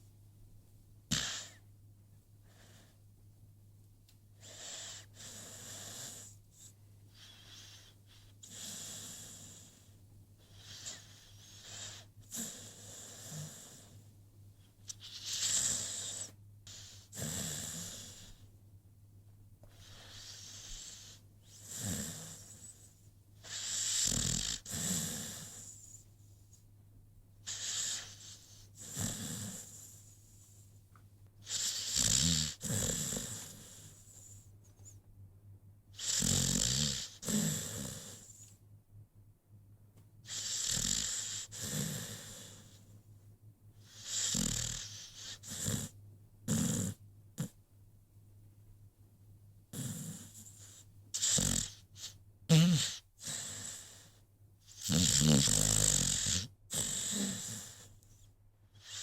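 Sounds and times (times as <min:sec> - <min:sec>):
dog snoring: 0:01.1 - 0:01.6, 0:04.4 - 0:14.1, 0:14.9 - 0:18.5, 0:19.6 - 0:26.1, 0:27.4 - 0:30.6, 0:31.4 - 0:34.5, 0:35.9 - 0:38.6, 0:40.2 - 0:42.9, 0:43.8 - 0:47.6, 0:49.7 - 0:59.0.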